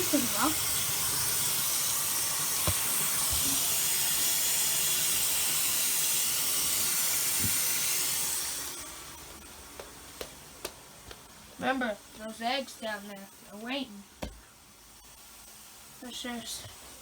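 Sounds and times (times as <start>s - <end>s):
tap running into a sink: 2.6s - 3.6s.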